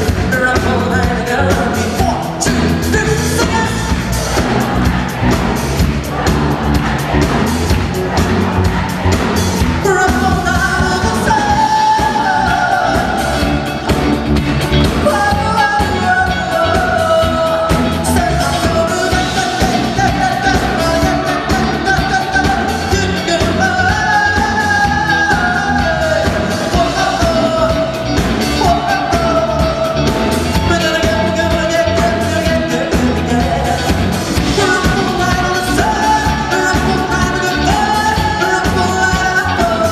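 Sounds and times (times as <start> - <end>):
band playing pop music: 0.0 - 39.9
person singing: 0.0 - 39.9.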